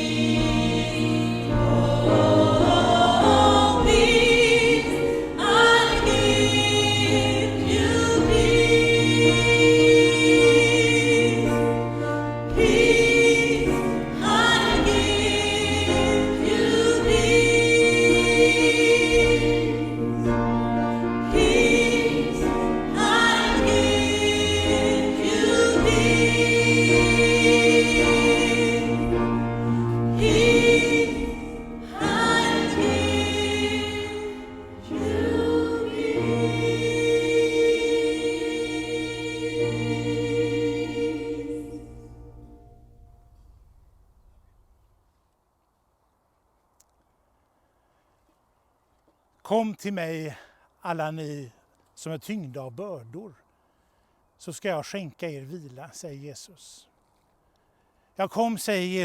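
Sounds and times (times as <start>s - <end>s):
gospel choir singing: 0.0s - 43.1s.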